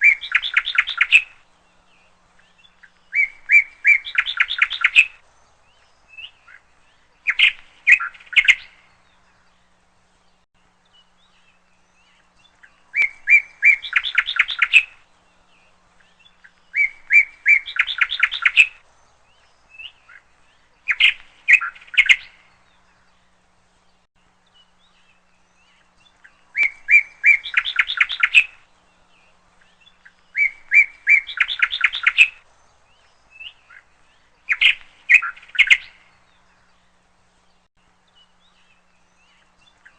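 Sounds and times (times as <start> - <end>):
songbird singing: 0.0 - 39.9.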